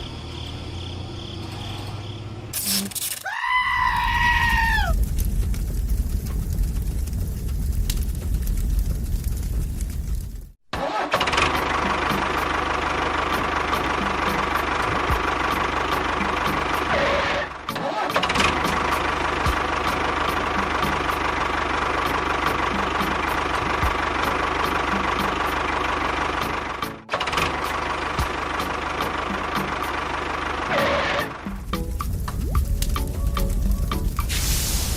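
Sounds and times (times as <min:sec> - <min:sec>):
small engine running: 0:10.9 - 0:34.2.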